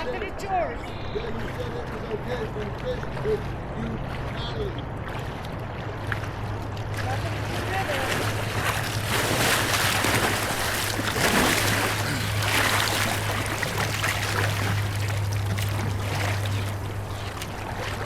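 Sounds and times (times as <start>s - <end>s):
steady low hum: 0.0s - 18.0s
surges of splashing water: 0.8s - 18.0s
whitewater rushing: 7.4s - 18.0s.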